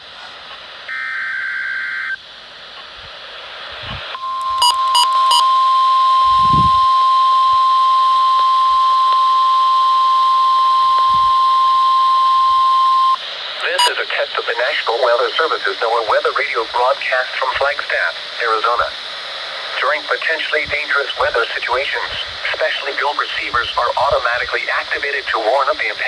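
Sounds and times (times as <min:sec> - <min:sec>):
radio static hiss: 0:00.0 - 0:05.7, 0:06.4 - 0:26.0
steady warning alarm tone: 0:04.2 - 0:14.0.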